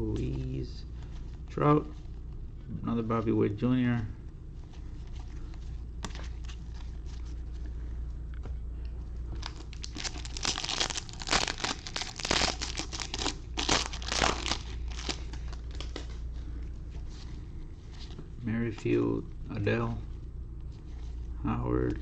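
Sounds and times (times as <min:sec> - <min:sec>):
low steady hum: 0:00.0 - 0:22.0
foil wrapper tearing and crinkling: 0:09.4 - 0:16.1.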